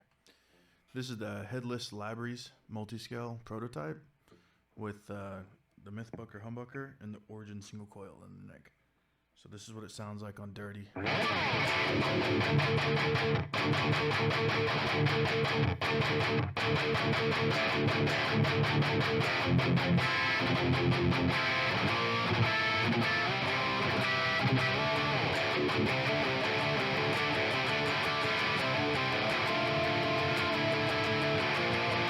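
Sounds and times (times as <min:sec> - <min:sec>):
overdriven electric guitar riff: 0:11.0 - 0:32.0.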